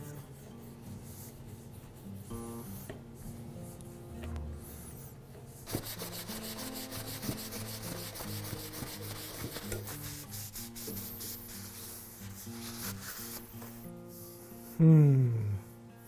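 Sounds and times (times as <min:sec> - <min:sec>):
background music: 0:02.2 - 0:16.0
hand rubbing wooden handle: 0:05.6 - 0:13.9.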